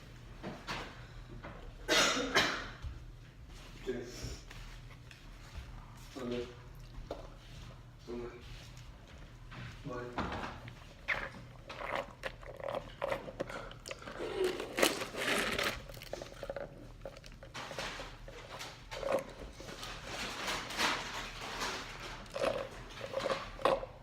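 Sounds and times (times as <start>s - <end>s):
food packaging rustling and crinkling: 8.5s - 24.0s
containers knocking and clattering: 11.2s - 24.0s.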